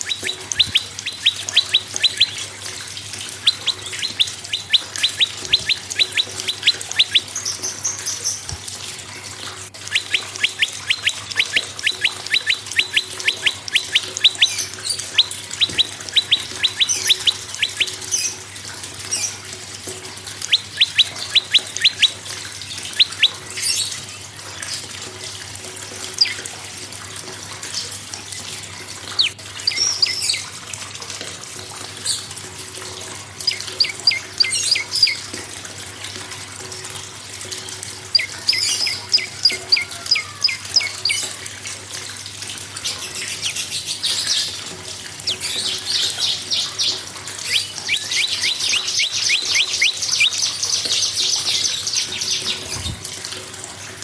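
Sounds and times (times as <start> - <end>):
songbird chipping calls: 0.0 - 8.6, 9.8 - 18.4, 20.4 - 23.8, 29.1 - 30.4, 33.4 - 35.3, 38.1 - 41.4, 45.2 - 53.0.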